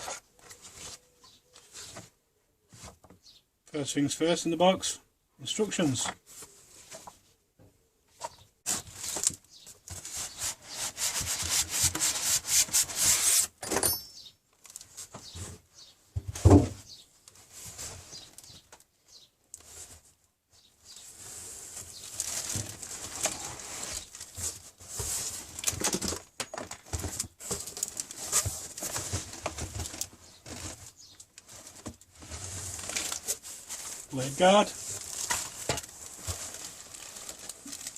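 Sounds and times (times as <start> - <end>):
packaging rustling and scraping: 0.0 - 2.2, 8.2 - 13.6, 17.3 - 18.8, 20.9 - 37.9.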